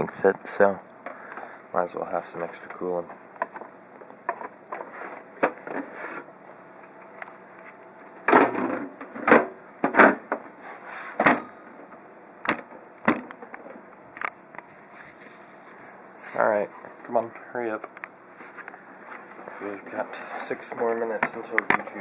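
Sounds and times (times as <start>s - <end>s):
computer case parts clicking: 20.9s - 22.0s.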